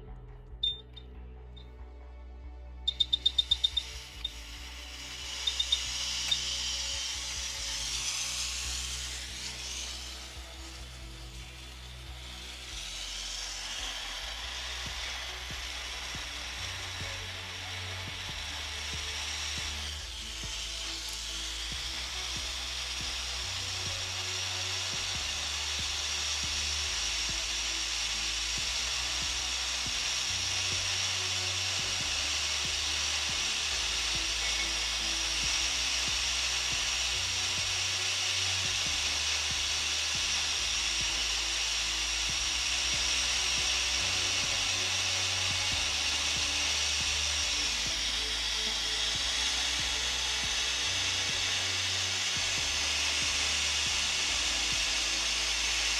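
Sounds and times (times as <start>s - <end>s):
background music with bass: 0.0s - 55.9s
hot air blower hissing: 2.9s - 55.9s.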